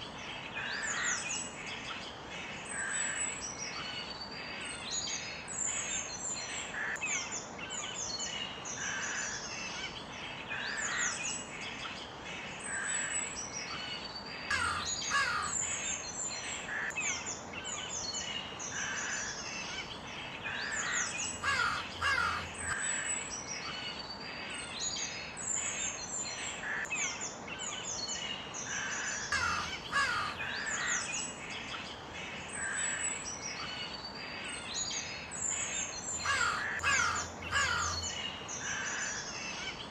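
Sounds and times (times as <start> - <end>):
crows cawing: 0.7 - 1.2, 6.7 - 7.0, 8.8 - 9.4, 14.5 - 15.7, 16.7 - 17.0, 18.7 - 19.4, 20.5 - 23.2, 26.6 - 26.9, 28.7 - 31.1, 36.2 - 39.6.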